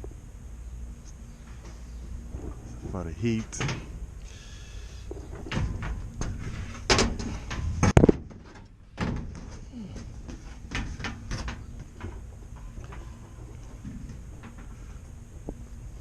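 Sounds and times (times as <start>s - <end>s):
sheet-metal panel clanking: 5.3s - 9.6s.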